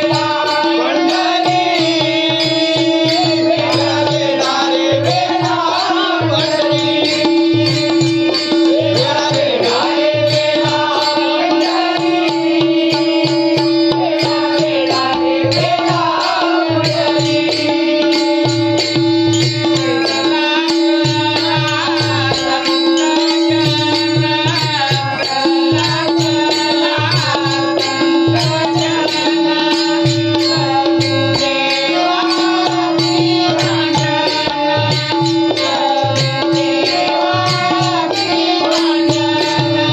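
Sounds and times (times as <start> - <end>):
person singing ornamented melody: 0.0 - 39.9.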